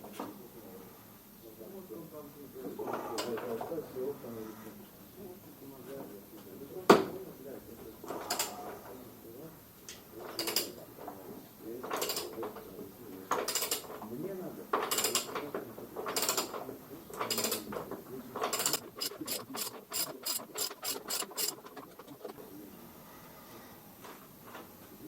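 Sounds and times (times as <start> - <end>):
ratchet wrench clicking: 18.6 - 22.3.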